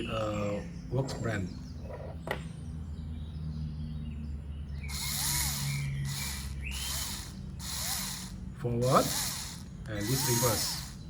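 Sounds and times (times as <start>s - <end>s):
electric screwdriver motor whirring: 4.9s - 11.0s.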